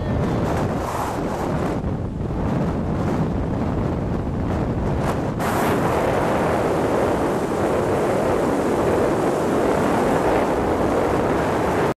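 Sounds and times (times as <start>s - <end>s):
water noise: 0.0s - 11.9s
wind on microphone: 0.0s - 12.0s.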